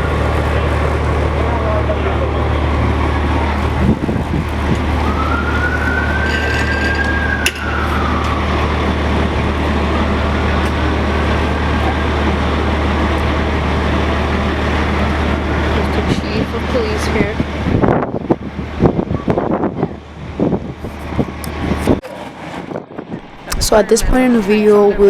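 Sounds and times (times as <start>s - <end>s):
emergency vehicle siren wailing: 0.0s - 15.9s
low rumble of vehicles: 0.0s - 25.0s.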